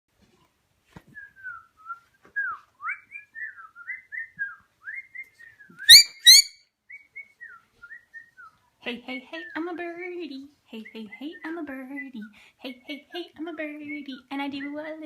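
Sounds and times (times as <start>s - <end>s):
parrot whistling: 5.7s - 6.6s
parrot squawking: 5.9s - 6.6s.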